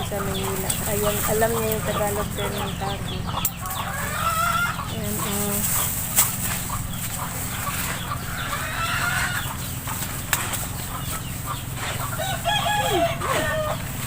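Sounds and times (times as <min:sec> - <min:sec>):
chickens clucking: 0:00.0 - 0:14.0
rooster crowing: 0:03.6 - 0:04.8, 0:07.7 - 0:09.6, 0:12.0 - 0:14.0.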